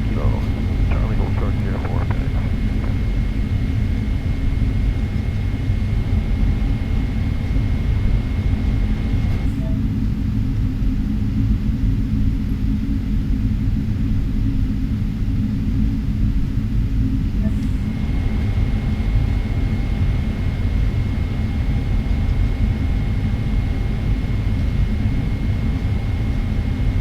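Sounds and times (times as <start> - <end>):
faint high whine: 0.0 - 3.8
aircraft engines rumbling: 0.0 - 9.2.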